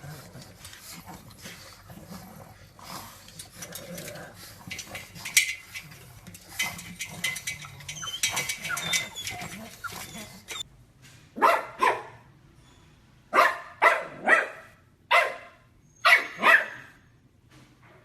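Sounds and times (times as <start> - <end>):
dog sounds: 0.0 - 10.7.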